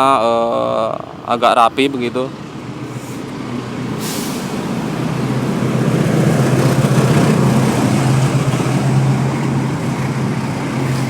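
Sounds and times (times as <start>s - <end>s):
vehicle engine rumbling: 0.0s - 11.0s
short hiss: 4.0s - 4.7s.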